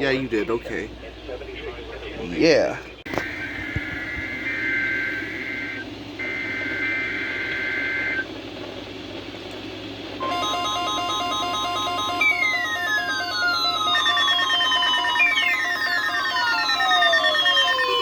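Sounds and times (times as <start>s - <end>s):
low hum and hiss: 0.0s - 18.0s
electronic tone with stepped beeps: 3.1s - 8.2s, 10.2s - 18.0s
two-tone digital warble: 10.2s - 18.0s.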